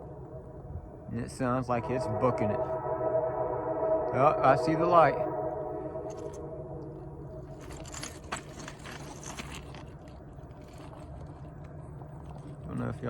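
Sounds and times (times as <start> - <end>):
distant locomotive engine drone: 0.0 - 13.0
crunching scraping clicks: 7.6 - 12.8.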